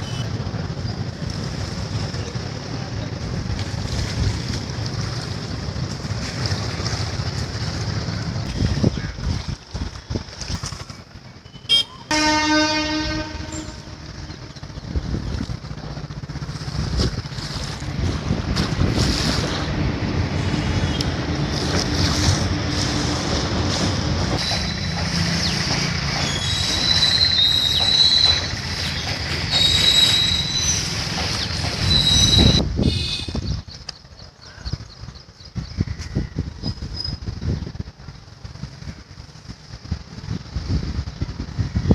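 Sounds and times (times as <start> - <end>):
train wagons rumbling: 0.0 - 41.9
train horn: 11.7 - 14.0, 32.8 - 33.4
wheel squeals: 24.3 - 33.5.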